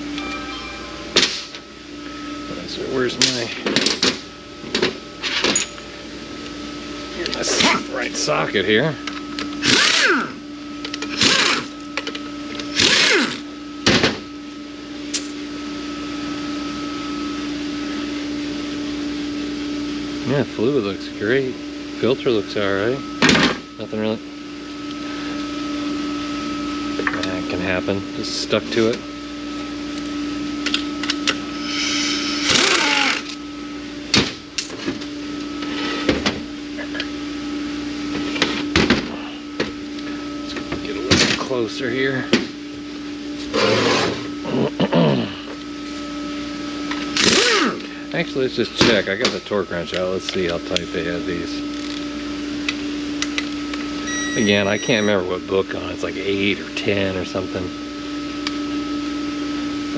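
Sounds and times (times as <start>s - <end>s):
steady background hum: 0.0s - 59.9s
impact gun whining: 1.1s - 2.1s, 9.1s - 14.2s, 30.6s - 33.4s, 54.0s - 55.2s
small power tool buzzing: 9.6s - 13.5s, 31.5s - 33.4s, 47.2s - 47.9s.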